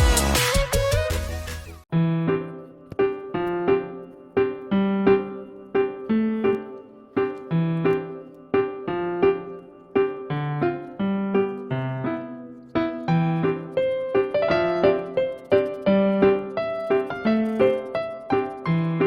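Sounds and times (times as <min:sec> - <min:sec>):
gentle piano music: 0:01.7 - 0:19.0.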